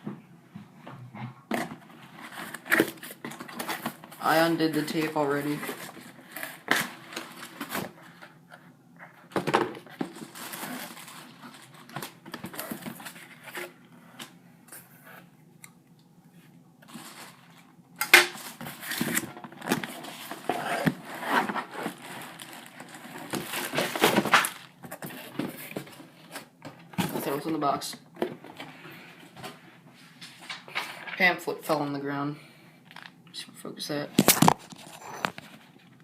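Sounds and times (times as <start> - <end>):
cardboard box rustling and crinkling: 9.7 - 13.8, 18.4 - 27.4.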